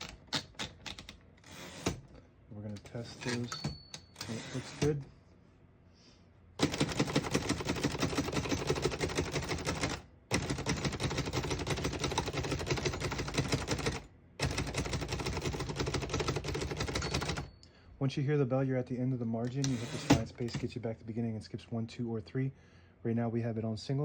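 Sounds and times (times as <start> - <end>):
muffled typewriter keystrokes: 0.0 - 1.2, 6.6 - 17.5.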